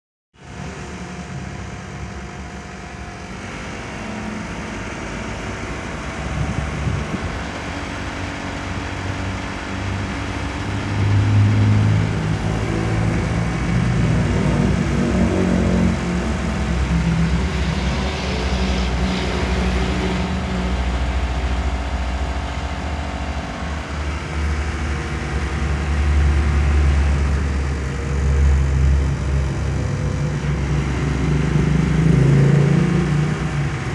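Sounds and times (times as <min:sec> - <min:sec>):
fan whir: 0:00.4 - 0:33.9
air conditioner compressor hum: 0:00.6 - 0:33.9.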